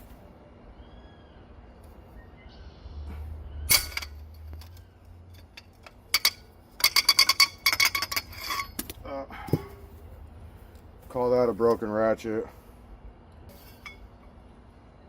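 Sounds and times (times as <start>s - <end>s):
sharp metal clack: 3.7s - 4.8s
metal hand tools clinking: 3.7s - 9.9s.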